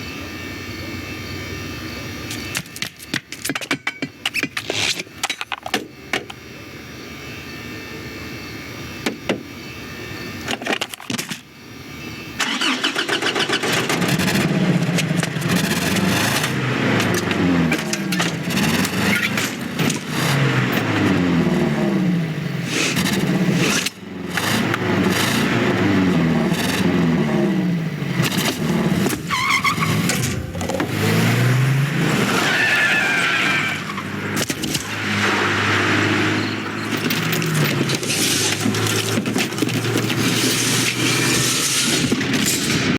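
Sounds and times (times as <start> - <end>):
truck engine revving: 12.4 - 42.9.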